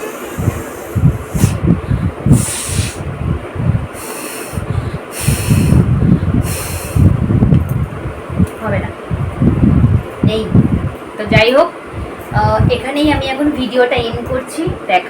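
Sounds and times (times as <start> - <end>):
woman blowing her nose: 0.0 - 1.6, 2.3 - 3.0, 4.0 - 5.9
breath puffs on microphone: 0.0 - 7.6.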